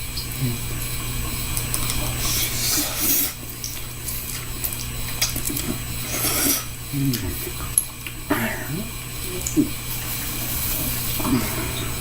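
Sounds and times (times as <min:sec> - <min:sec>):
low room hum: 0:00.0 - 0:12.0
wet slurps of noodles: 0:06.0 - 0:06.7.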